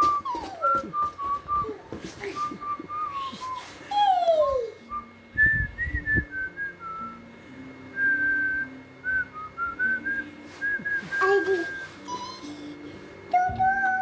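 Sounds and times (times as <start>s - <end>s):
person whistling a tune: 0.0s - 4.0s, 4.9s - 7.2s, 8.0s - 12.4s.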